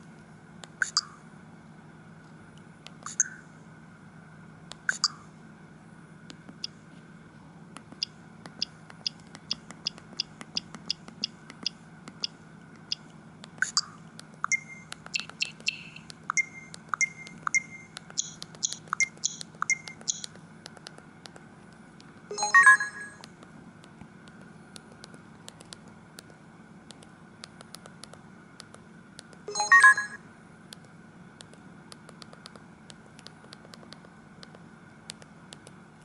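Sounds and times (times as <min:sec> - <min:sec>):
short high key beeps: 0:13.7 - 0:20.3, 0:22.3 - 0:23.2, 0:29.5 - 0:30.2
electronic phone tones: 0:22.3 - 0:23.2, 0:29.5 - 0:30.2.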